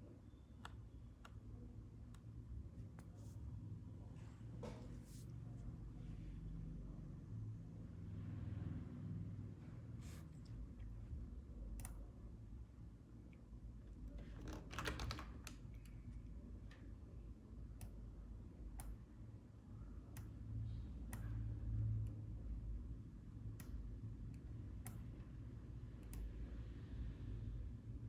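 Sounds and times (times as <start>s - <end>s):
low steady hum: 0.0s - 28.0s
keyboard and mouse clicks: 11.7s - 12.1s, 18.7s - 19.0s.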